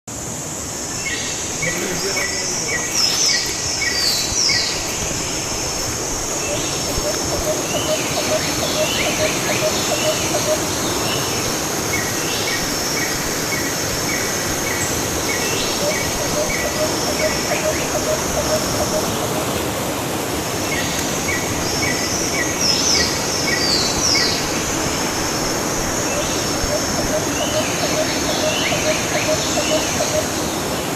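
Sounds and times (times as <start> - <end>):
waterfall rushing: 0.1 - 30.9
birds singing: 1.0 - 19.3, 20.7 - 30.9.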